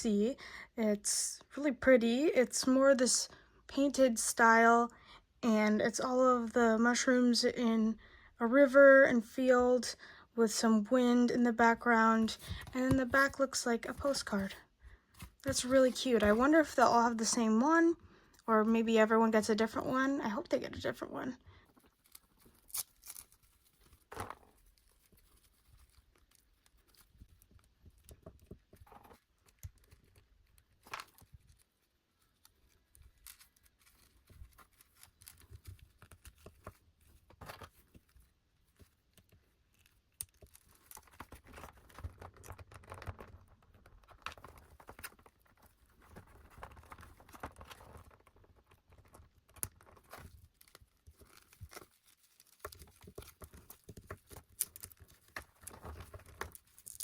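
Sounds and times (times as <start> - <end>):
packaging rustling and crinkling: 21.6 - 57.0.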